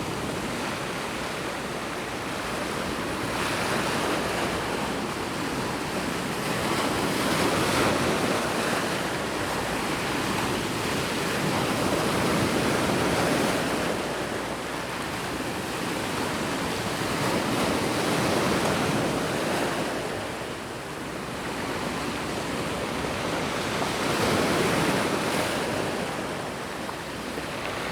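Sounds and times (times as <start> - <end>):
waves breaking on beach: 0.0 - 27.9.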